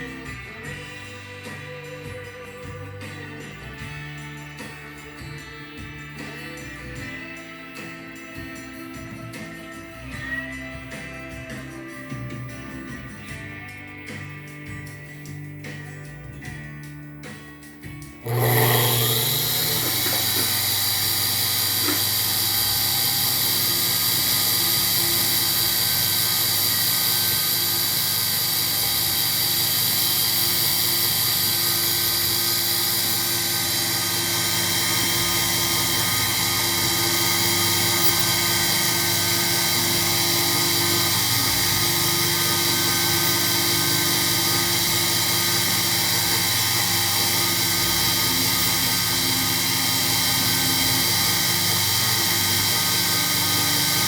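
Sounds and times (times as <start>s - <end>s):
milling machine spindle whine: 18.2s - 54.0s.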